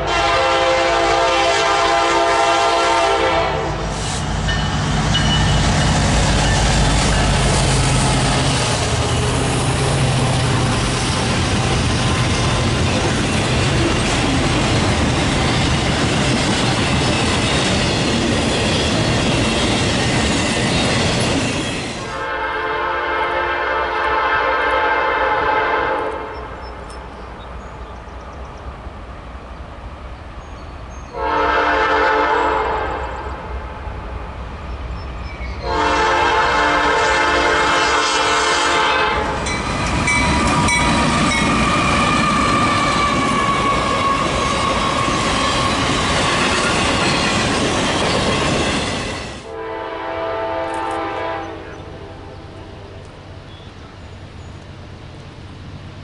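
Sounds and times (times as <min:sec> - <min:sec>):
locomotive air horn blasts: 0:00.0 - 0:04.0, 0:22.1 - 0:26.5, 0:31.1 - 0:33.3, 0:35.6 - 0:39.5, 0:49.4 - 0:52.8
train running on rails: 0:00.0 - 0:56.0
wheels squealing: 0:39.4 - 0:49.4.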